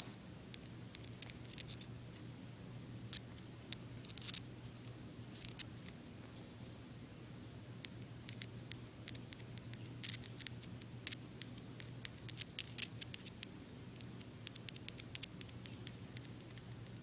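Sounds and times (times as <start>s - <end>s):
low steady hum: 0.0s - 17.0s
piezo disc clicks and crackles: 3.1s - 6.0s, 7.8s - 17.0s.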